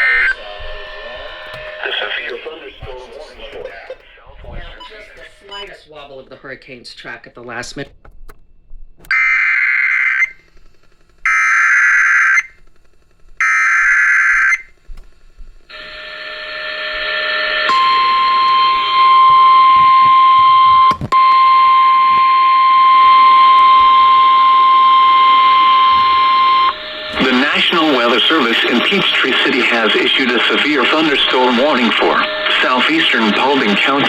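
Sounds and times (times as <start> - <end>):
radio hiss: 0.0 - 6.2, 23.1 - 34.0
screechy digital data tones: 22.5 - 34.0.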